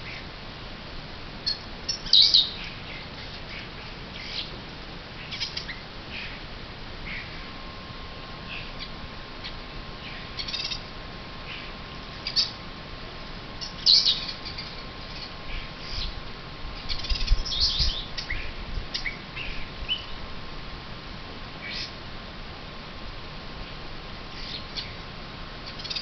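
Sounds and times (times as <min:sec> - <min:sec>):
bullfinches calling: 0:08.5 - 0:12.6.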